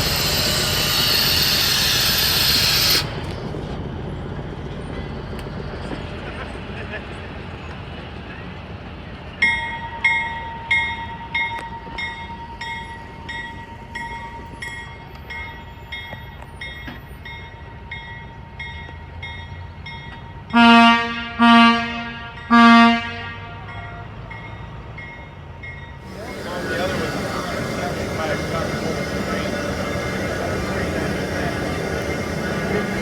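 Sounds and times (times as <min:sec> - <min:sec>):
locomotive bell ringing: 0:00.0 - 0:03.0, 0:09.4 - 0:21.0, 0:22.2 - 0:33.0
train horn blasts: 0:20.5 - 0:24.1.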